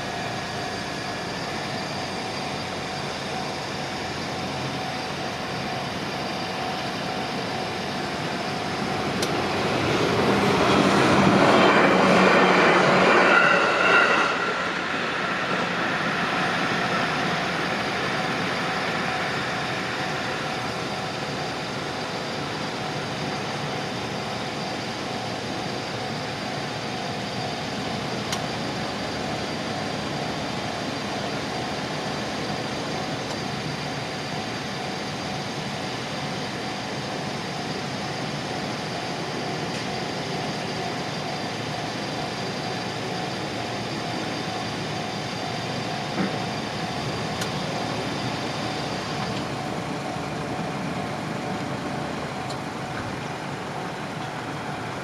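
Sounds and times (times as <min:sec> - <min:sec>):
electric train passing: 0:08.2 - 0:19.9.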